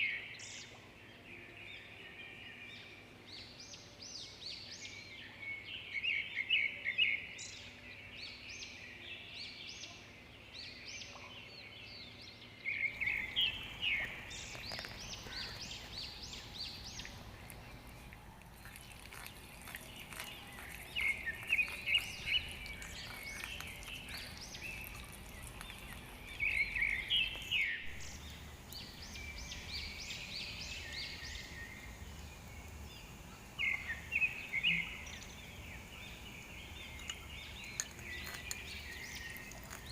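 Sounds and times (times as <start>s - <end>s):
background hiss: 12.7s - 39.9s
bird song phrase: 18.6s - 39.9s.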